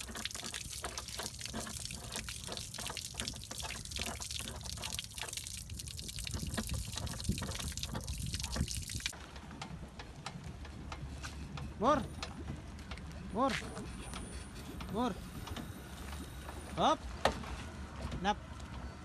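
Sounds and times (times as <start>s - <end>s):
water splashing: 0.0s - 9.2s
boat engine rumbling: 0.0s - 19.0s.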